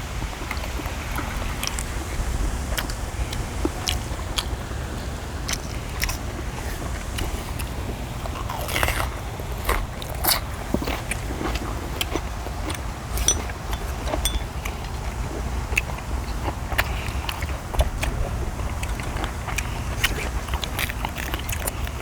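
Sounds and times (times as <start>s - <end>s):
people chewing: 0.4s - 22.0s
steady low hum: 12.7s - 21.4s.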